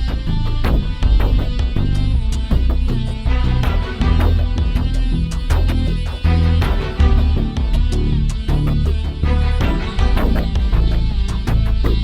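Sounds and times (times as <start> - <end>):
energetic soundtrack with guitar and beat: 0.0 - 12.0.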